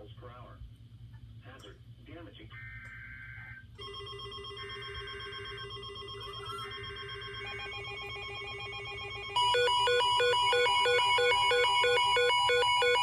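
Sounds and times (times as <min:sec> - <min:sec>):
steady high alarm tone: 0:03.8 - 0:13.0
two-pitch alternating beeping: 0:03.8 - 0:13.0.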